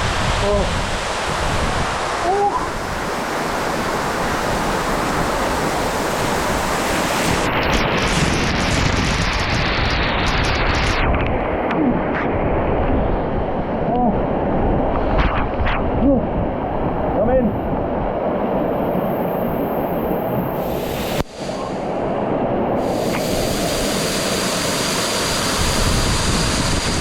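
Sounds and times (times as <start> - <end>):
waterfall rushing: 0.4 - 8.2, 22.8 - 27.0.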